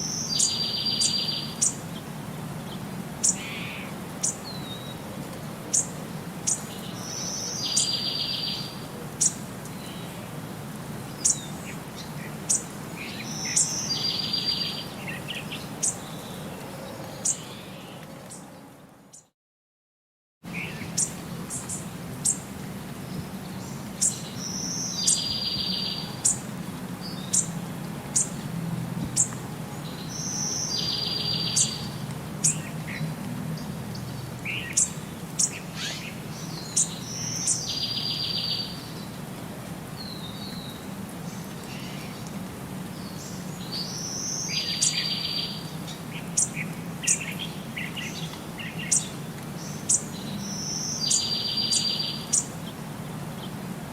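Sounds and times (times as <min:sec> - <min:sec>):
bird chirping: 0:00.0 - 0:01.8, 0:11.2 - 0:16.4, 0:33.6 - 0:39.0, 0:43.0 - 0:52.5.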